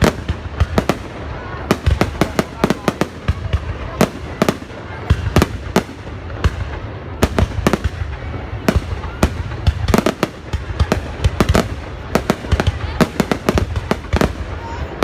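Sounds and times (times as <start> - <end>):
fireworks cracks and bangs: 0.0 - 15.0.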